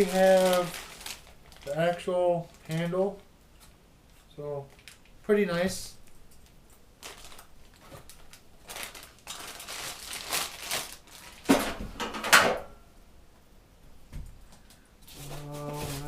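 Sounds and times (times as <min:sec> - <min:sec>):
packaging rustling and crinkling: 0:00.0 - 0:05.2, 0:06.4 - 0:12.0.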